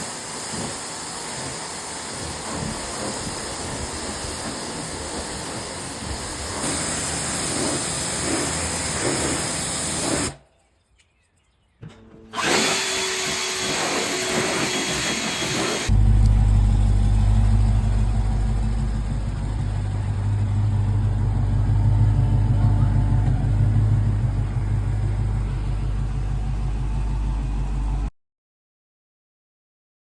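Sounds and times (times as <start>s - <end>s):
engine idling: 15.9s - 28.1s.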